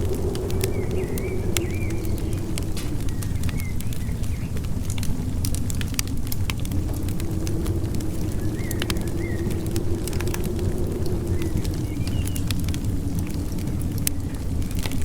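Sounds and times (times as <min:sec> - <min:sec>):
low rumble of wind: 0:00.0 - 0:15.0
wood fire crackling and popping: 0:00.0 - 0:15.0.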